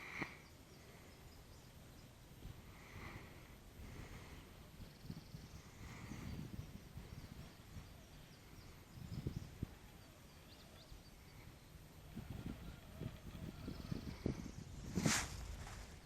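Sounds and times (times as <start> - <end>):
faint high bird chirps: 4.8 - 14.8.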